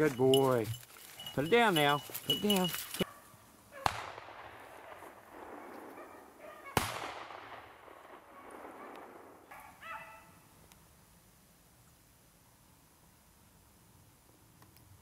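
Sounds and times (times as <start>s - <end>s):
pistol shot with echo: 3.8s - 4.6s, 6.8s - 9.3s.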